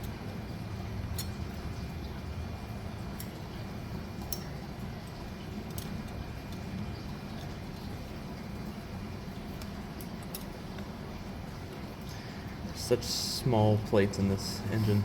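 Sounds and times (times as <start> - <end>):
steady low background hum: 0.0 - 15.0.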